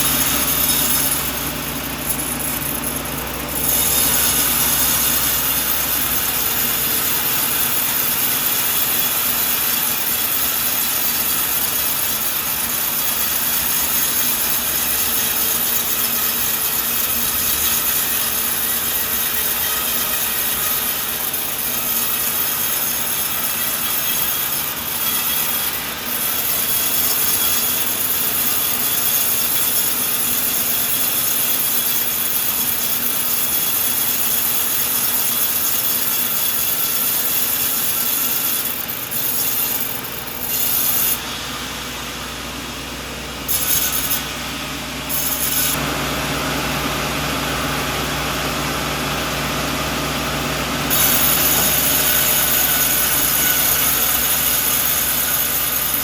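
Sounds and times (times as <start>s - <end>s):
low machine hum: 0.0s - 10.6s
sawmill blade cutting log: 0.0s - 56.0s.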